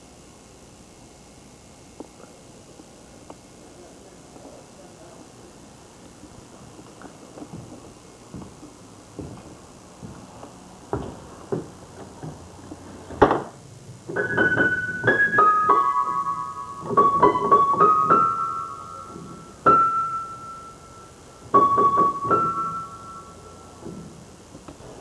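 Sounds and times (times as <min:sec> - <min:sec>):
piano notes and chords: 0:10.9 - 0:25.0.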